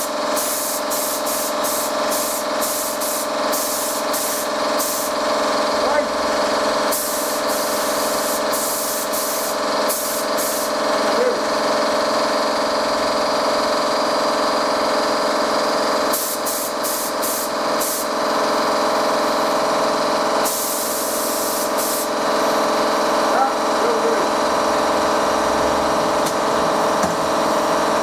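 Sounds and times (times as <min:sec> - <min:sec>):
spray gun hissing bursts: 0:00.0 - 0:05.6, 0:06.6 - 0:11.0, 0:16.0 - 0:19.7, 0:20.4 - 0:23.0
steady mechanical hum: 0:00.0 - 0:28.0.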